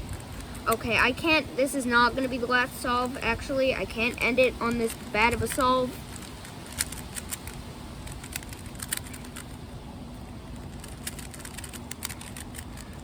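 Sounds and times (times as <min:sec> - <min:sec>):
low background rumble: 0:00.0 - 0:13.0
plastic puzzle cube clicks: 0:10.8 - 0:13.0.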